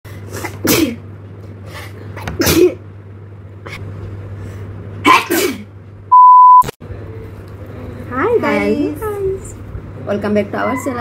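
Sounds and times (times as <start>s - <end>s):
steady low hum: 0.1s - 11.0s
person sneezing: 0.3s - 1.0s, 2.4s - 2.8s, 5.0s - 5.7s.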